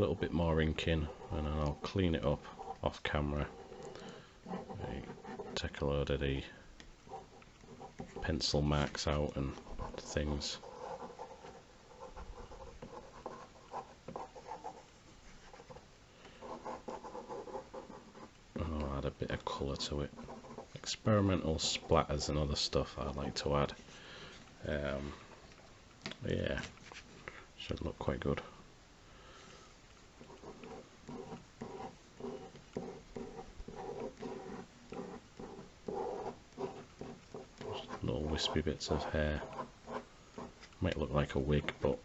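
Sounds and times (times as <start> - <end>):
pen scratching on paper: 1.0 - 5.8, 7.0 - 15.8, 16.4 - 18.3, 19.7 - 20.8, 21.5 - 22.4, 30.2 - 40.7
pen squeaking on paper: 30.4 - 40.6.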